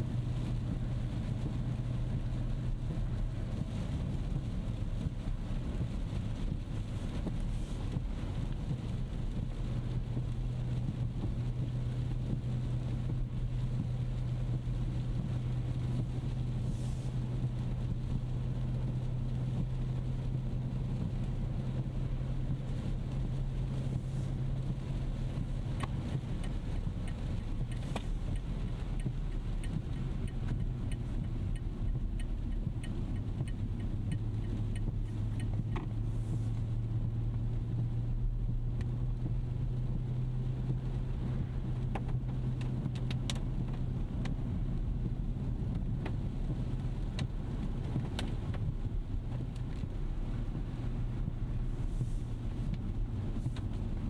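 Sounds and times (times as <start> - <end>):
car cabin engine and tyre drone: 0.0 - 54.0
faint regular ticks: 25.8 - 36.5.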